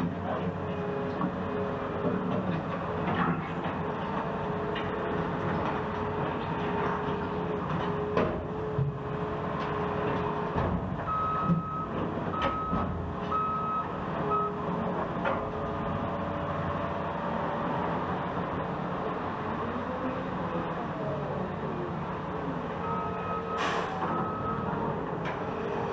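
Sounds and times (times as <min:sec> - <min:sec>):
heavy engine rumble: 0:00.0 - 0:25.9
backup alarm beeping: 0:11.1 - 0:14.6.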